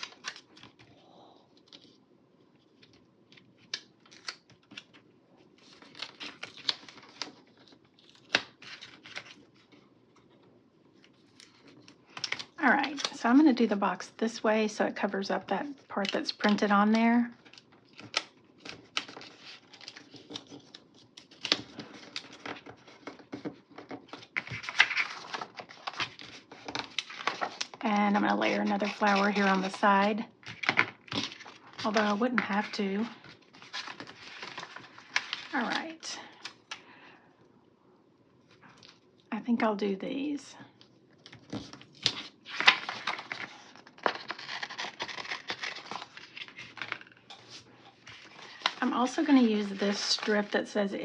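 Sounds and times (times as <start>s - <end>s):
paper rustle: 5.6s - 10.4s, 17.4s - 27.8s, 28.5s - 36.8s, 41.2s - 50.7s.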